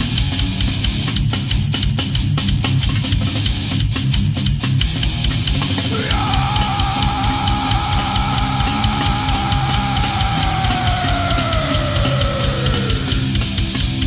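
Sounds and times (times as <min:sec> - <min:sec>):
distorted guitars: 0:00.0 - 0:14.0
fast drums: 0:00.0 - 0:14.0.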